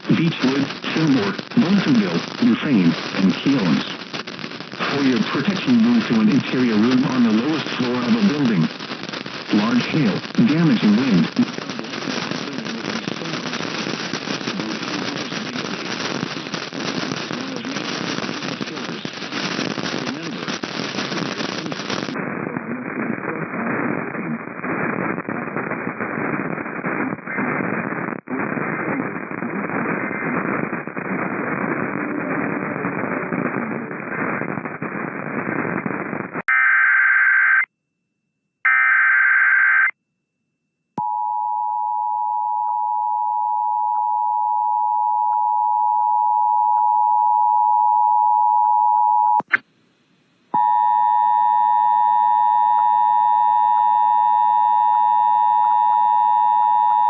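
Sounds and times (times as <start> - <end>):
crackling static hiss: 0.0 - 37.7, 38.7 - 40.0, 49.3 - 50.9.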